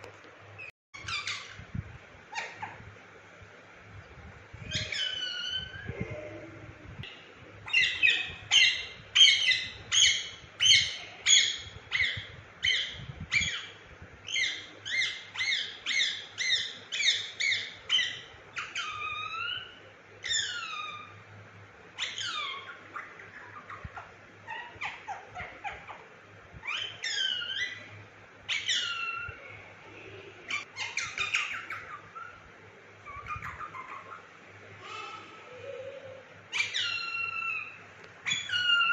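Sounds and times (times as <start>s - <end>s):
parakeet squawking: 1.0s - 1.6s, 4.7s - 6.2s, 7.6s - 21.2s, 22.0s - 26.0s, 26.6s - 27.9s, 28.5s - 29.4s, 30.5s - 32.4s, 33.0s - 34.4s, 36.5s - 38.9s.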